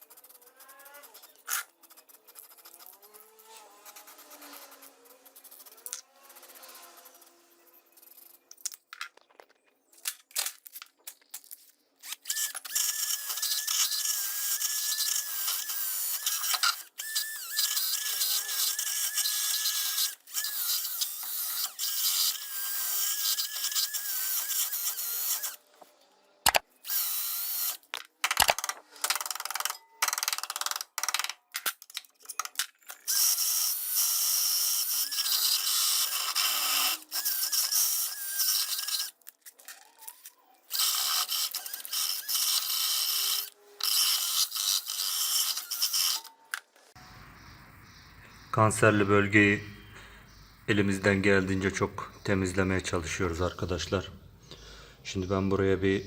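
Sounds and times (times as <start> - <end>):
drill wire brush scrubbing metal: 12.3 - 25.6, 33.1 - 39.2.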